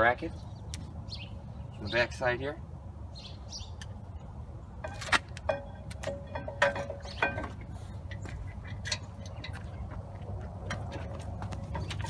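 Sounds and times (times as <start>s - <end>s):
metal clinks and knocks: 4.8s - 12.0s.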